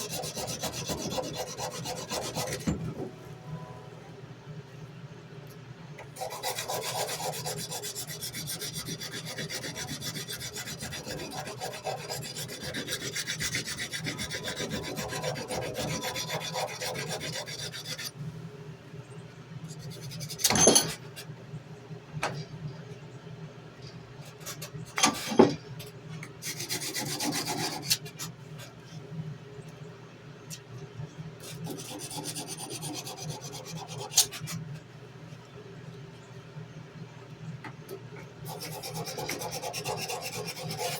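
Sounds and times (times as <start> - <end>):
sandpaper scraping on metal: 0.0 - 2.7, 6.2 - 18.1, 26.4 - 28.2, 31.4 - 34.6, 38.5 - 40.9.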